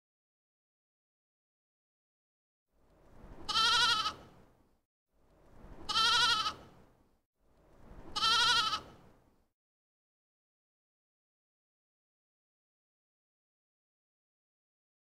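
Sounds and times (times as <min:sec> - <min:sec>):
farm animal bleating: 0:03.5 - 0:04.3, 0:05.9 - 0:06.7, 0:08.2 - 0:09.0.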